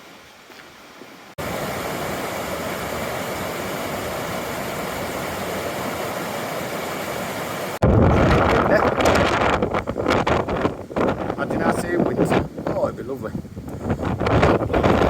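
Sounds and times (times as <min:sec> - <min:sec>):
river water rushing: 0:01.2 - 0:07.8.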